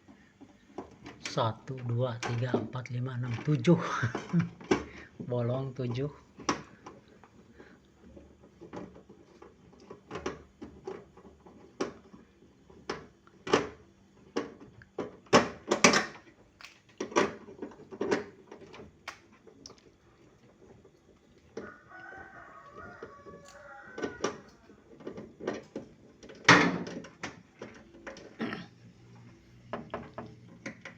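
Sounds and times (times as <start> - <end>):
rooster crowing: 21.6 - 24.9.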